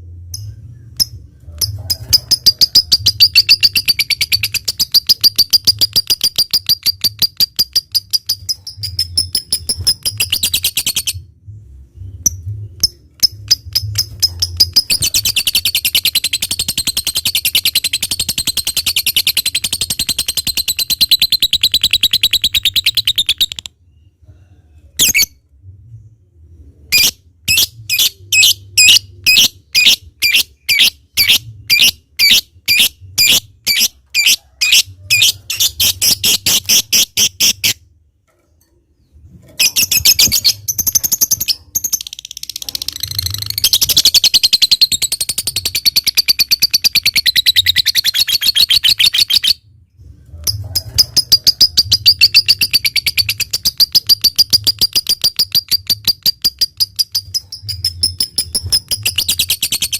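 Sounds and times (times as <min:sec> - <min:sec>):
lovebird chattering: 0:00.4 - 0:11.2, 0:12.3 - 0:23.7.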